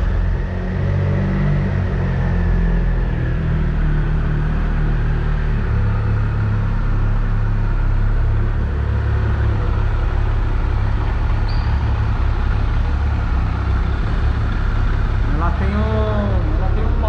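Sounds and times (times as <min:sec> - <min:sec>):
motorcycle engine idling: 0:06.5 - 0:17.0.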